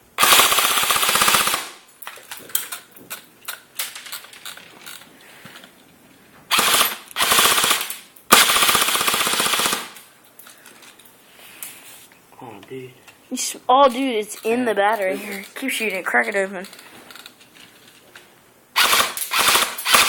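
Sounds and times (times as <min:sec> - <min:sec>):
airsoft gun firing bursts: 0:00.2 - 0:01.8, 0:06.5 - 0:10.0, 0:18.8 - 0:20.0.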